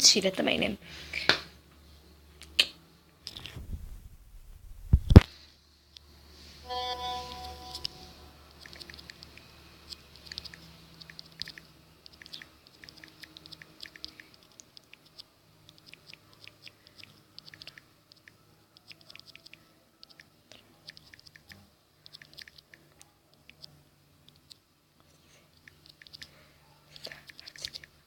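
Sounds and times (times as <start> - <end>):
faint low hum: 0.0 - 28.0
touchscreen keyboard clicks: 7.3 - 23.7, 25.6 - 26.4, 27.0 - 28.0.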